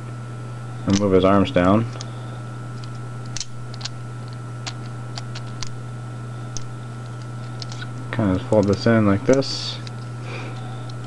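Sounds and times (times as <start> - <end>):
steady low hum: 0.0 - 11.0
plastic toy parts clicking: 8.5 - 10.0.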